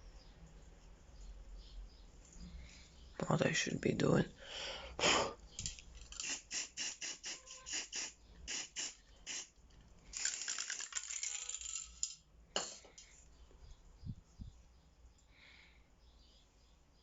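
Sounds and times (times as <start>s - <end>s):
spray can ball rattling: 5.6s - 9.5s, 10.1s - 12.2s
spray paint hissing: 6.1s - 9.5s, 10.1s - 11.6s.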